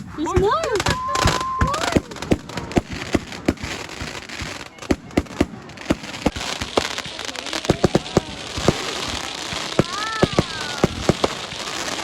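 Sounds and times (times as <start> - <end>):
crackling hiss: 0.0 - 12.0
fireworks bangs and crackles: 0.0 - 12.0.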